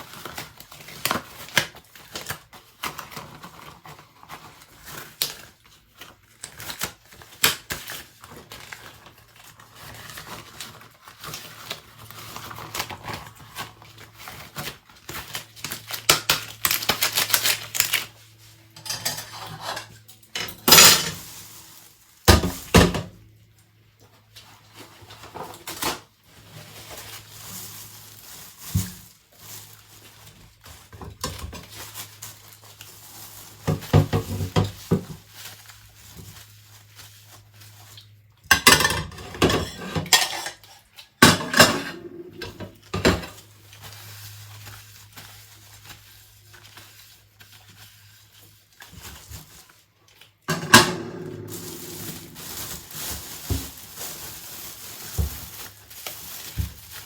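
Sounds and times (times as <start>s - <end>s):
dishes and cutlery clinking: 18.8s - 21.2s, 38.5s - 43.4s, 50.5s - 52.4s.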